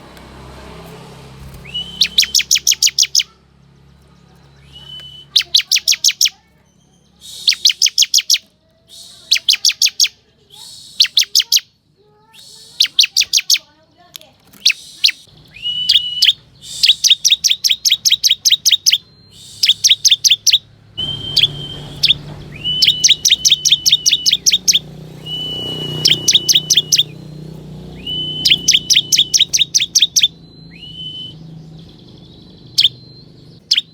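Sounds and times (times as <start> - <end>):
bird singing fast sharp notes: 1.4 - 13.8, 14.5 - 33.9
low hum: 19.0 - 33.6.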